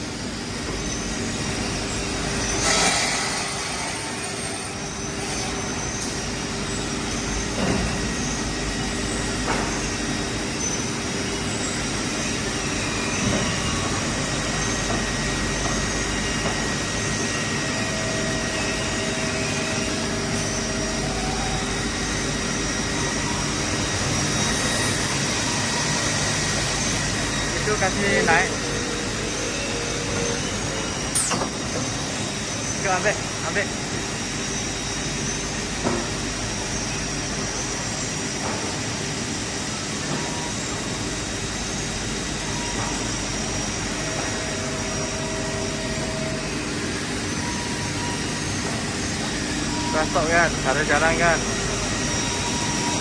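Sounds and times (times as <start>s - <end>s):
saw machine motor hum with whine: 0.0s - 53.0s.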